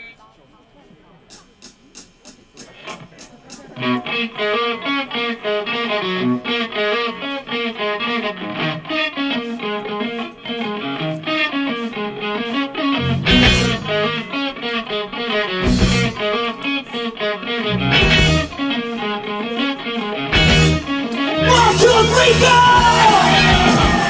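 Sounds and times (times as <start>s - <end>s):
electric guitar arpeggio with effects: 3.8s - 10.1s, 12.1s - 16.2s, 17.2s - 24.0s.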